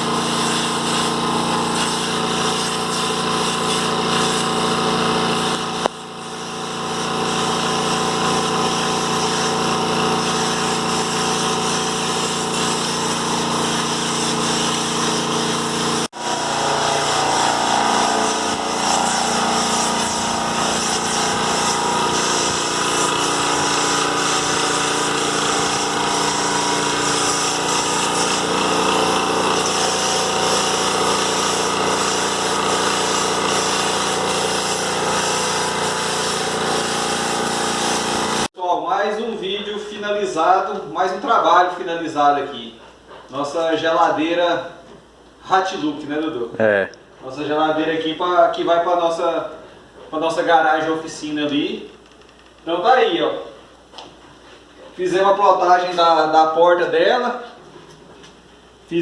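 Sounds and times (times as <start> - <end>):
power tool motor running: 0.0 - 38.5.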